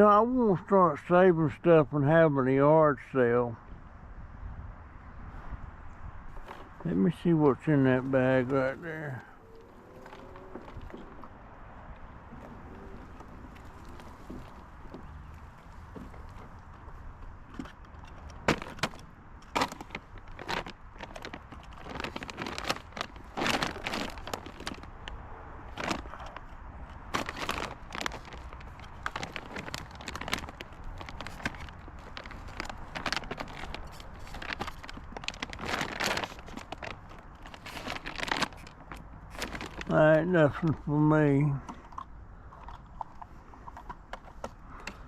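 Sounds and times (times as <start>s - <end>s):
trash bag rustling and crinkling: 6.3s - 41.0s.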